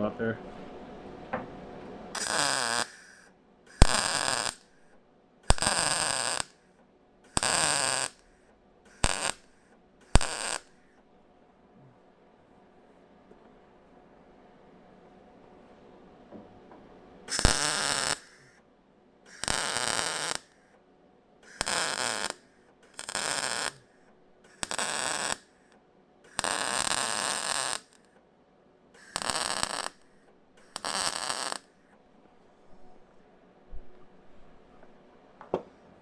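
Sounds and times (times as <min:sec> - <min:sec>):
welder arc crackling on metal: 0:02.2 - 0:06.6, 0:07.3 - 0:08.3, 0:08.9 - 0:10.8, 0:17.3 - 0:18.5, 0:19.3 - 0:20.6, 0:21.4 - 0:28.1, 0:29.0 - 0:31.8.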